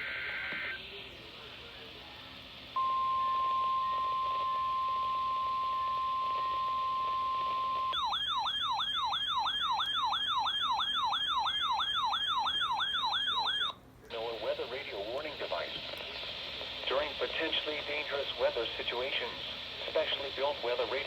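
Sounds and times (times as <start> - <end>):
steady alarm tone: 2.8 - 13.8
fast rising and falling siren: 7.4 - 13.8.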